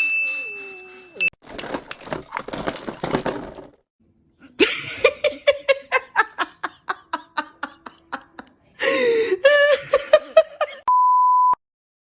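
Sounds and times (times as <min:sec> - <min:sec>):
clattering noise: 0:01.4 - 0:03.9
person laughing: 0:04.4 - 0:10.9.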